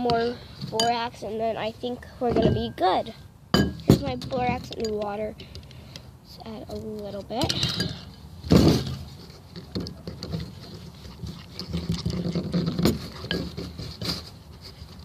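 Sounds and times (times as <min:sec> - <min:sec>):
slime squelching and scraping: 0:09.0 - 0:15.0.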